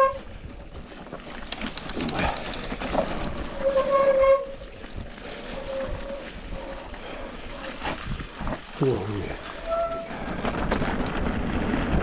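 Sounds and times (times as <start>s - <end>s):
freewheel ticking: 1.4s - 3.0s.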